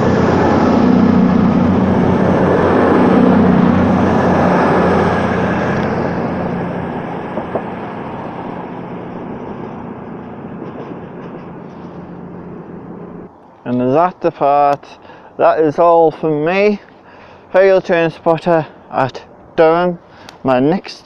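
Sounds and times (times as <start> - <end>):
train rumble: 0.0 - 13.3
diesel train engines humming: 0.0 - 20.5.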